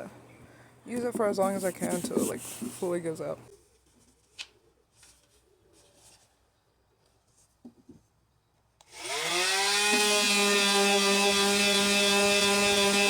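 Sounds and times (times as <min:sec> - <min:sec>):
power sander whining: 0:08.8 - 0:13.0.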